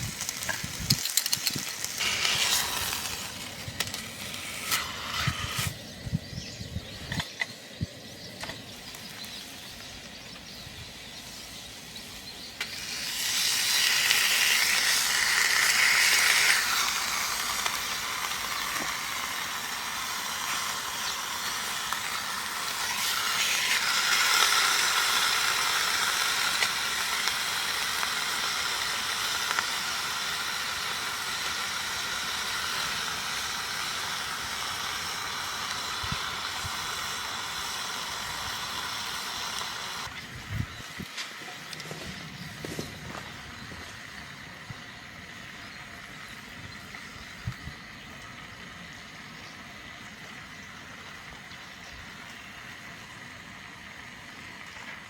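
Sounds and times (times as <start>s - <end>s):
steady hiss: 0.0s - 55.0s.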